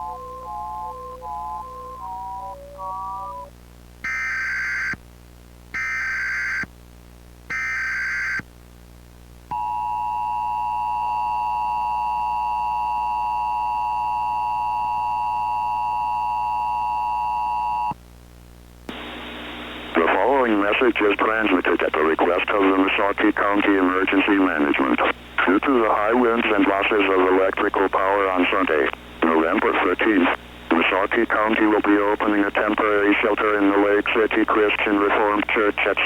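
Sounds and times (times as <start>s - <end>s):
synthesizer melody: 0.0s - 3.5s
radio hiss: 18.7s - 36.0s.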